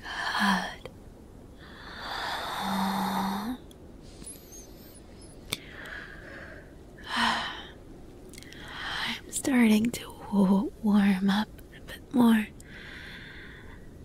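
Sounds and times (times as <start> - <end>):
soft breaths: 1.5 - 10.6, 11.7 - 14.0.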